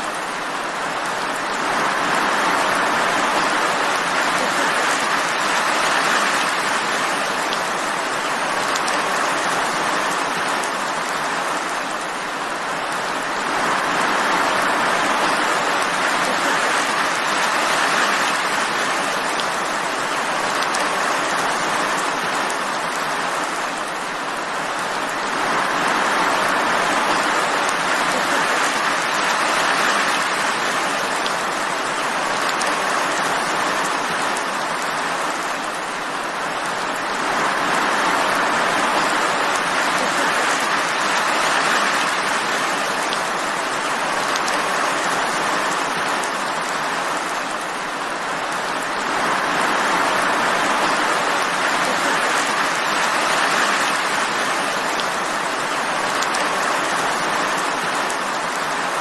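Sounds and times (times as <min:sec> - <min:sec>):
steady rain hiss: 0:00.0 - 0:59.0
raindrop ticks: 0:08.6 - 0:09.3, 0:20.5 - 0:21.0, 0:32.0 - 0:33.0, 0:44.2 - 0:45.0, 0:56.0 - 0:56.6.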